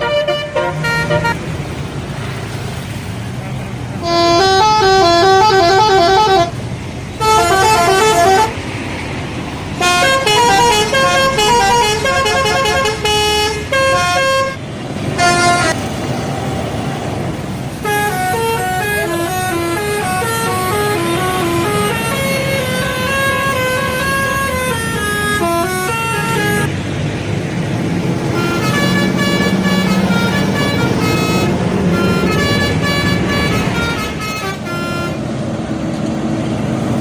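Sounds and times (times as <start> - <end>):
bus horn playing melodies: 0.0 - 1.5, 4.0 - 8.6, 9.7 - 15.9, 17.7 - 26.7, 28.2 - 35.4.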